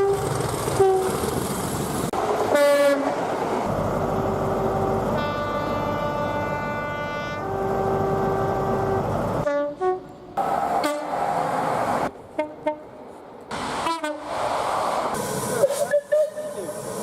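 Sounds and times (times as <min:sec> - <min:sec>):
two-tone train horn: 0:00.8 - 0:01.2, 0:02.5 - 0:03.2, 0:04.7 - 0:10.1, 0:10.8 - 0:11.2, 0:12.4 - 0:12.9, 0:13.8 - 0:14.2.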